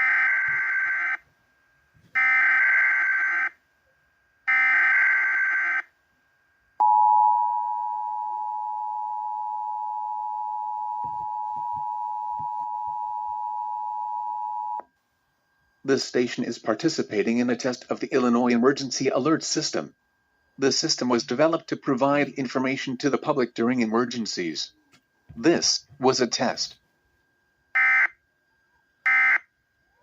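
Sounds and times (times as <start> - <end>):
two-tone attention signal: 6.8 - 14.8.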